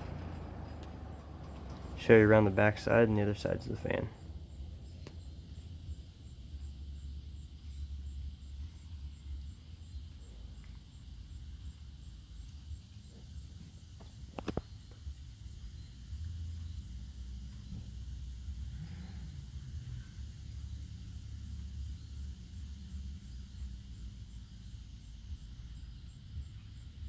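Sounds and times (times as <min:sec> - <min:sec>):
fan blades spinning down: 0:00.0 - 0:06.5.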